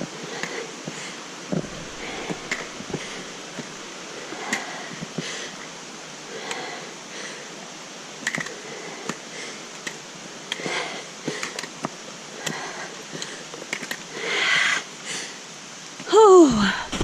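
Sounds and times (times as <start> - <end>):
person breathing hard: 0.2 - 5.6, 6.2 - 7.6, 10.5 - 11.6, 12.3 - 13.5, 14.1 - 15.4.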